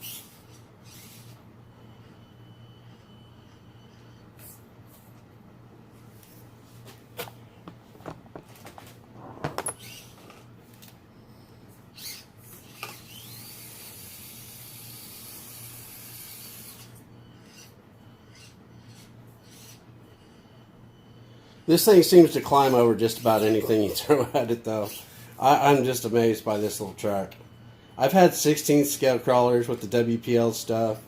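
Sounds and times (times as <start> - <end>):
small electric motor whining: 0.0 - 4.6, 11.9 - 20.6.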